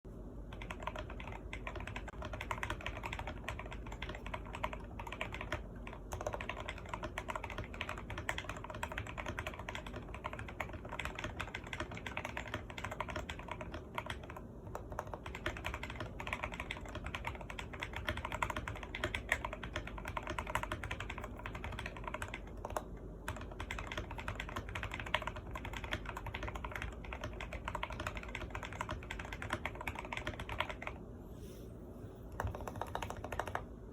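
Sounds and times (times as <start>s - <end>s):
fast typing on mechanical keyboard: 0.4s - 31.0s, 32.4s - 33.7s.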